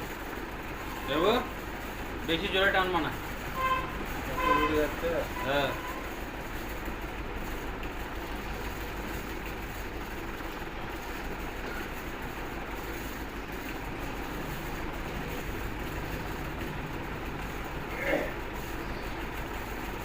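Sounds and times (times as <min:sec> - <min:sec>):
road traffic rumble: 0:00.0 - 0:20.0.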